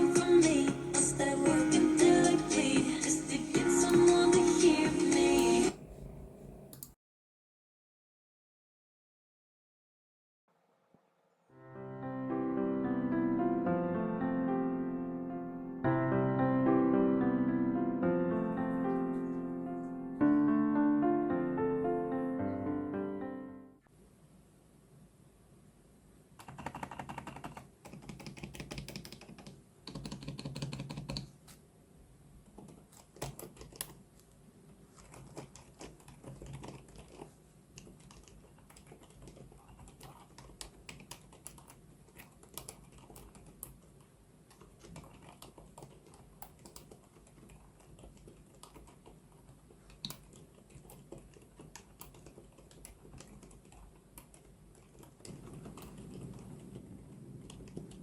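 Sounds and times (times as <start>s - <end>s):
mechanical keyboard typing: 26.4s - 31.3s, 32.6s - 34.0s, 35.0s - 58.0s.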